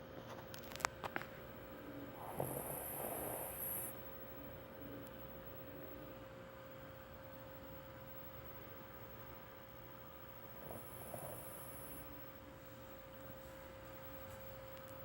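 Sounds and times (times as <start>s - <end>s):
electrical hum: 0.0s - 15.0s
snort: 2.1s - 4.0s, 10.5s - 12.1s
person snoring: 2.2s - 4.0s, 10.6s - 12.0s.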